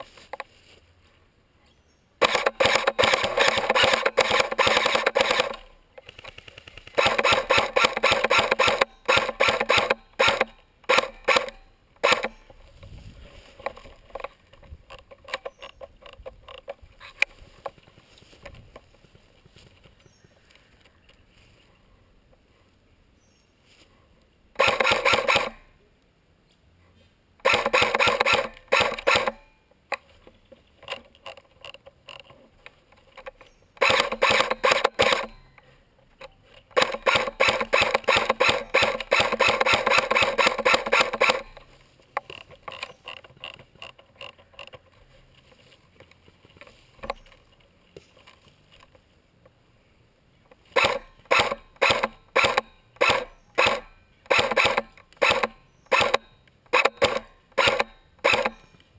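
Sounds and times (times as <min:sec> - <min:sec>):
airsoft guns firing full-auto: 0:02.2 - 0:05.7, 0:06.9 - 0:12.4, 0:24.6 - 0:25.6, 0:27.4 - 0:29.4, 0:33.8 - 0:35.3, 0:36.8 - 0:41.6.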